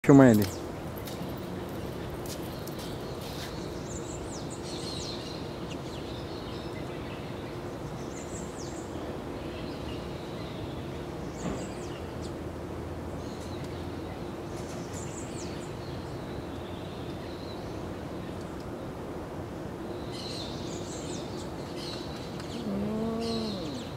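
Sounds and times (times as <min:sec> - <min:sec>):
faint low hum: 0:20.5 - 0:23.9.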